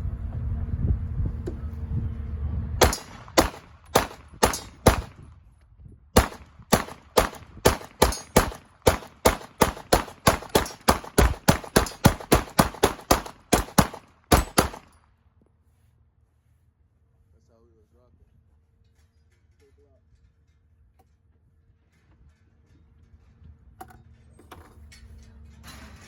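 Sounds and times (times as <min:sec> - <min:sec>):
pistol shots: 0:02.8 - 0:05.2, 0:06.2 - 0:15.0.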